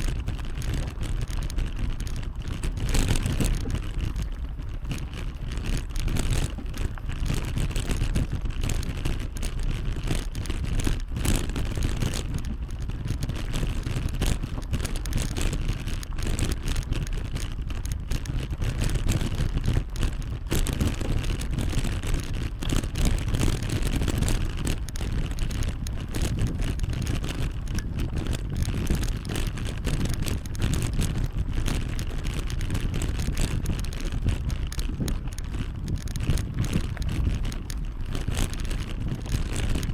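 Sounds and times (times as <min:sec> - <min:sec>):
bicycle tyre road noise: 0:00.0 - 0:39.9
wind buffeting microphone: 0:00.0 - 0:39.9.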